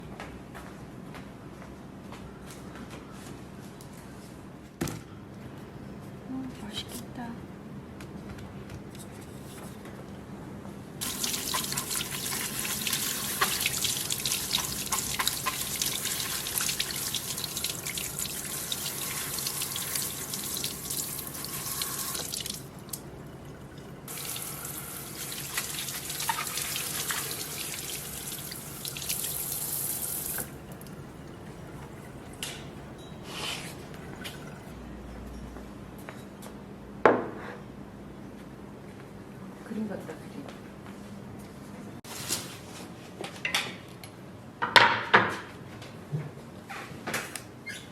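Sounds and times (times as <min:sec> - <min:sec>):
water running: 0:11.0 - 0:34.7.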